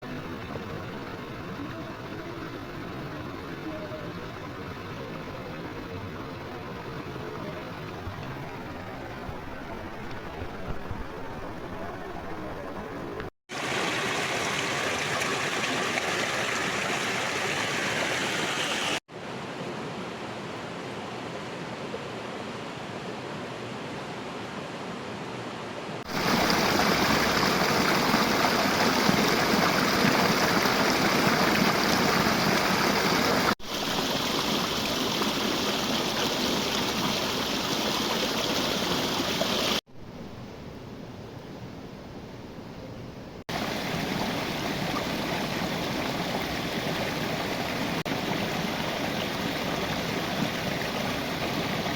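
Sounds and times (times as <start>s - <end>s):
running water rushing: 0.0s - 19.0s, 26.0s - 39.8s, 43.5s - 51.9s.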